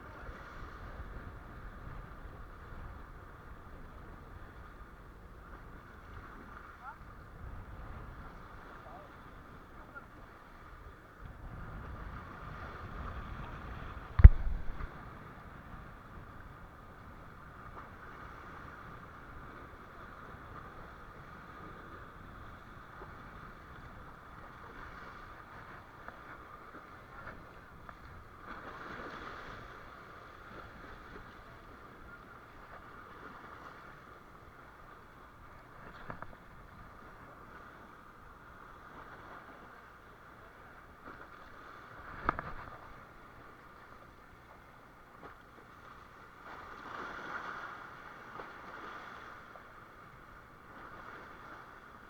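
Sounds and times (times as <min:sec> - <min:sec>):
boat engine running: 0:06.0 - 0:46.4.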